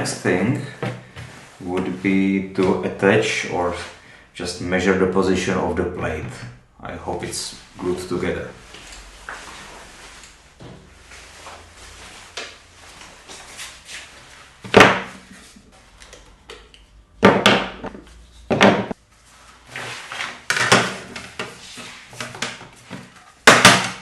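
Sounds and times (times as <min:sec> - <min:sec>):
hard objects knocking on workbench: 0:17.2 - 0:19.0.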